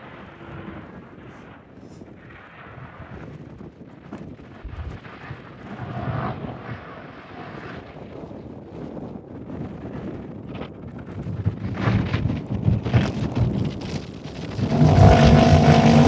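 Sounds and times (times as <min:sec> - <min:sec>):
wind buffeting microphone: 0:00.0 - 0:16.0
engine passing: 0:14.4 - 0:16.0.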